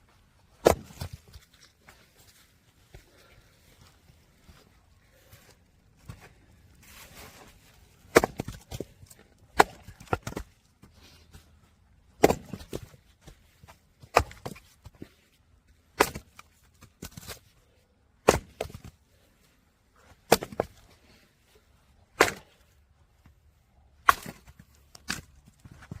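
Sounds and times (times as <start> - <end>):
wood splitting crack: 0.6 - 1.2, 8.0 - 10.5, 12.2 - 13.0, 14.0 - 15.0, 15.9 - 17.4, 18.2 - 18.9, 20.2 - 20.8, 22.1 - 22.6, 24.0 - 25.4.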